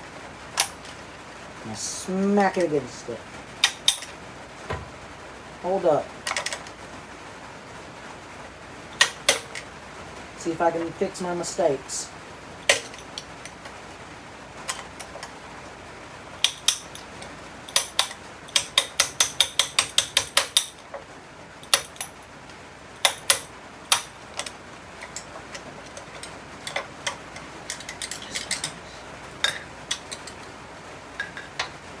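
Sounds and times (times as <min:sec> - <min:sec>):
metal tools clicking: 0:00.6 - 0:01.0, 0:03.6 - 0:04.2, 0:09.0 - 0:09.6, 0:12.7 - 0:13.7, 0:14.7 - 0:15.3, 0:16.4 - 0:21.0, 0:21.6 - 0:22.2, 0:23.0 - 0:30.5.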